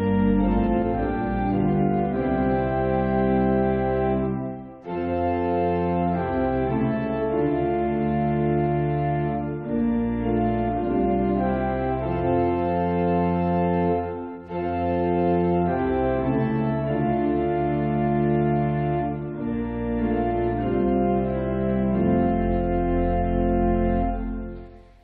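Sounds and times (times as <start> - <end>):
organ playing slow held chords: 0.0 - 25.0.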